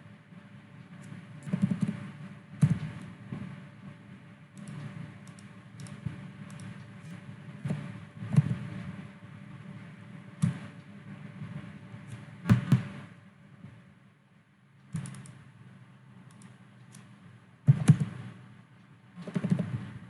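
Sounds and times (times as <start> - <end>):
faint steady hum: 0.0 - 20.0
mouse and keyboard clicks: 1.0 - 2.0, 4.6 - 6.8, 14.9 - 15.4, 16.3 - 17.1, 17.7 - 18.2, 19.2 - 19.9.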